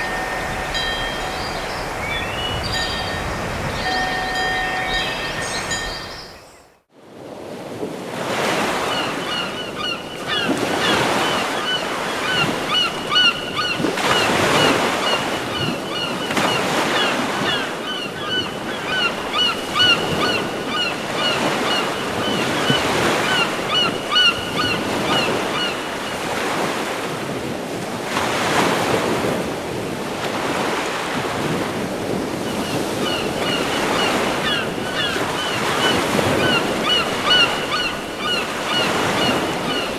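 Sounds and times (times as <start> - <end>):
surf washing in: 0.0 - 6.6
birds chirping: 0.0 - 6.8, 32.6 - 39.9.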